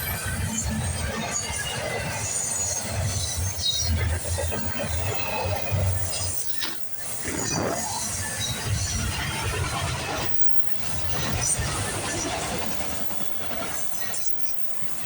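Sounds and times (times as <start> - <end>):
train wheels rumbling on rails: 7.8 - 15.0.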